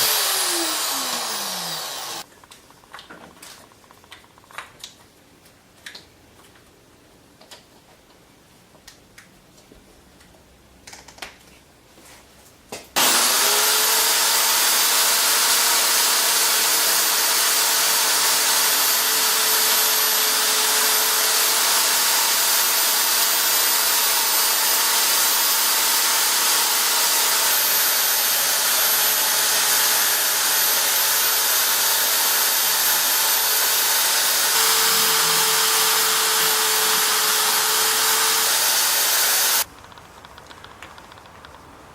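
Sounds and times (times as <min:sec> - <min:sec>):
power tool whining: 0:00.0 - 0:02.3, 0:13.0 - 0:39.7
small clicks: 0:39.6 - 0:41.8.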